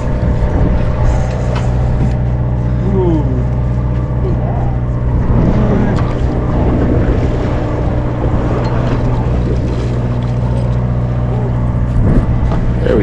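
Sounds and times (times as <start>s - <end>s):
boat engine droning: 0.0s - 13.0s
water noise: 0.0s - 13.0s
wind: 0.0s - 13.0s.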